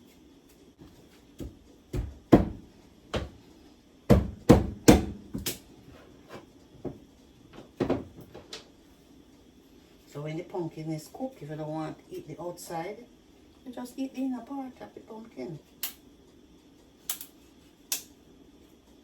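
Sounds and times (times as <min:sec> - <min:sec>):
knife chopping on cutting board: 0:01.4 - 0:03.4, 0:04.1 - 0:05.6.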